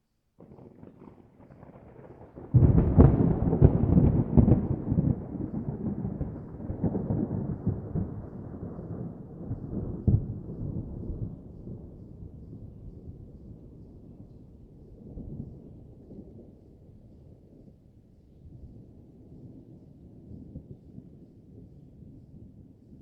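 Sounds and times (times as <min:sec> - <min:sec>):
thunder rumbling and cracking: 0:00.4 - 0:16.6.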